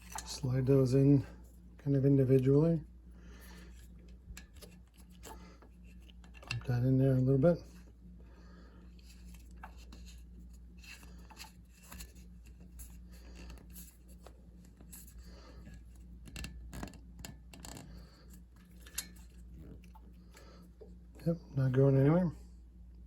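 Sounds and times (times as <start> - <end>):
wires rubbing and clicking: 0.0 - 1.6, 3.4 - 7.9, 8.9 - 20.9
steady low hum: 0.0 - 23.0.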